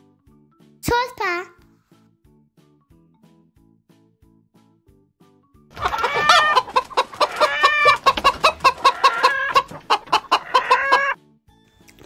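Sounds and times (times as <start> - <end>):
chicken clucking: 5.7 - 11.2.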